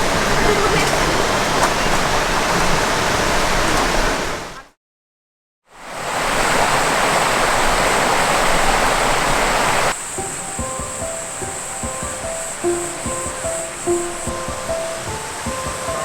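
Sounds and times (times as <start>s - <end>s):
loud steady rushing noise: 5.8s - 16.0s.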